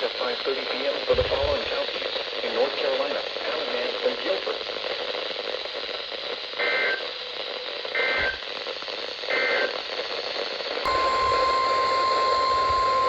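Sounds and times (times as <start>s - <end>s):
radio hiss: 0.0s - 13.0s
steady warning alarm tone: 10.9s - 13.0s
warbling data bursts: 10.9s - 13.0s.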